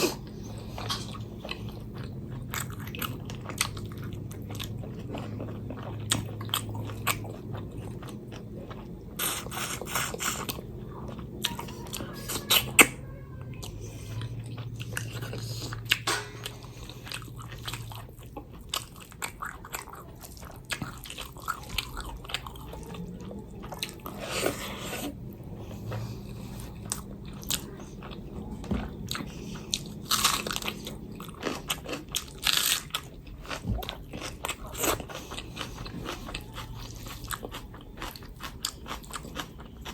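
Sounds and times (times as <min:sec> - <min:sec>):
person chewing and crunching food: 0:00.0 - 0:39.9
steady low hum: 0:00.0 - 0:39.9.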